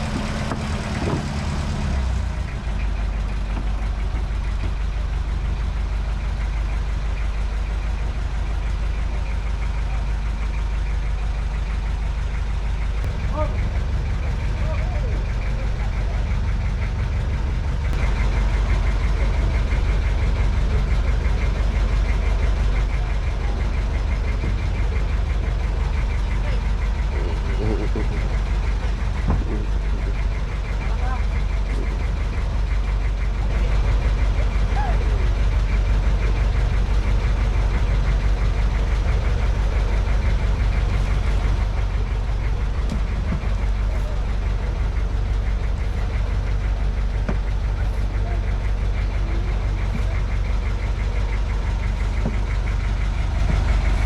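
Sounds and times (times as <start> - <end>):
boat engine running: 0.0 - 54.0.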